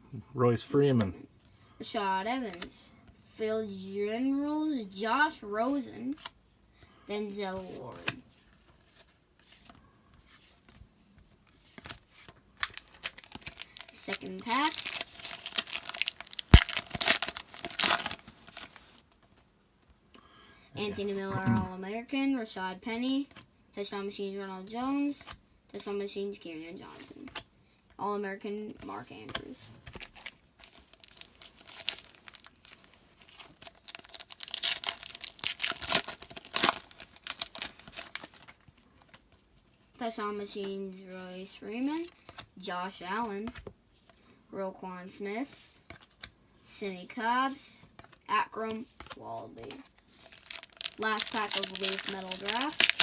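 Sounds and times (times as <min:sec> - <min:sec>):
trading cards rustling: 0:02.3 - 0:02.8, 0:07.5 - 0:19.4, 0:28.7 - 0:39.3, 0:48.0 - 0:53.0
foil wrapper crackling: 0:12.6 - 0:19.0, 0:29.9 - 0:38.6, 0:49.6 - 0:53.0.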